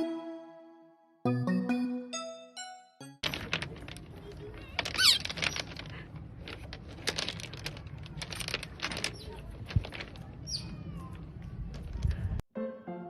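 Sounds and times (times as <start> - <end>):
rustling: 3.2 - 12.4
falling bird chirp: 10.4 - 11.1.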